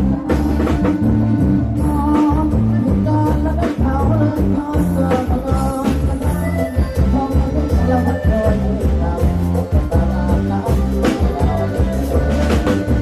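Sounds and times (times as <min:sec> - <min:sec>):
heavy bass: 0:00.0 - 0:13.0
rock band music over speakers: 0:00.0 - 0:13.0
steady drum beat: 0:00.0 - 0:13.0.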